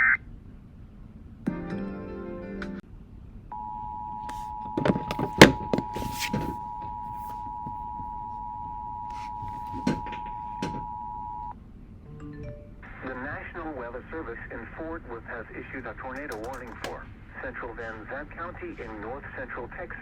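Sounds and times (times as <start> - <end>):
sharp knocks and clicks: 16.2 - 17.0.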